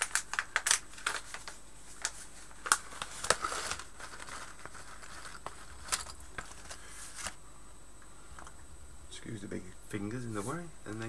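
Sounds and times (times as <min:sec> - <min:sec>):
plastic bag rustling: 0:00.0 - 0:07.4.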